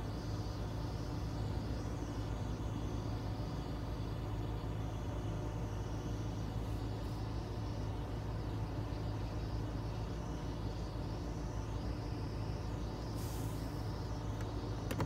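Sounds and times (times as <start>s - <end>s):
car air conditioning hum: 0.0s - 15.0s.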